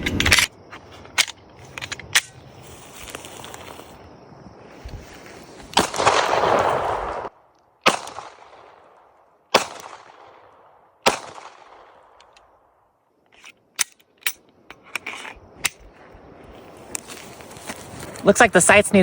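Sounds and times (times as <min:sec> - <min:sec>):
pistol shots echoing: 0:05.8 - 0:12.0.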